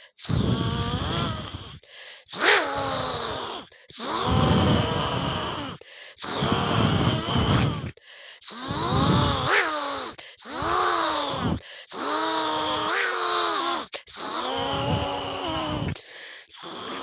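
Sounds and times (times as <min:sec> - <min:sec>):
child breathing: 0:00.0 - 0:17.0
child imitating animal call: 0:02.4 - 0:07.8, 0:08.6 - 0:16.0.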